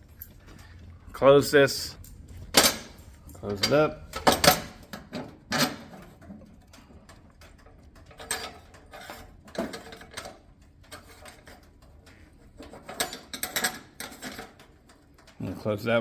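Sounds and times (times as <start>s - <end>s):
metal stove door clanking: 2.5s - 6.2s.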